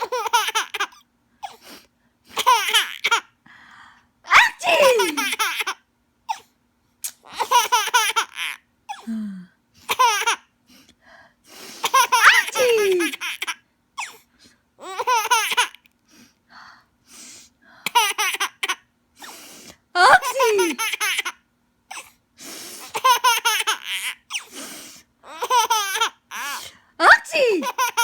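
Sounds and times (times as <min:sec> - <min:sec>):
baby laughing: 0:00.0 - 0:01.0, 0:02.4 - 0:03.2, 0:04.3 - 0:05.8, 0:07.4 - 0:08.6, 0:11.9 - 0:13.6, 0:20.0 - 0:21.3, 0:23.0 - 0:24.2, 0:25.3 - 0:28.0.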